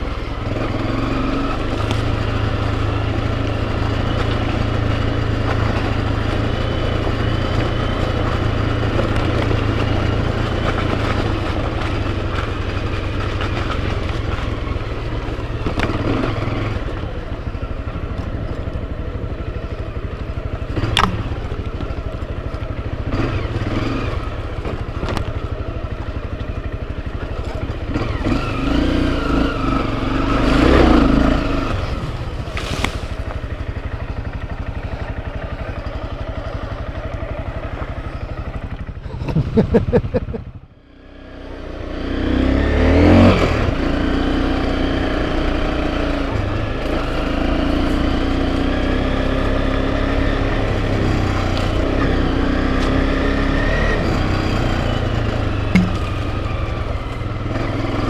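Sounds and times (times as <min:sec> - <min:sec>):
motorcycle engine running: 0:00.0 - 0:58.0
sharp knocks and clatter: 0:55.7 - 0:56.4.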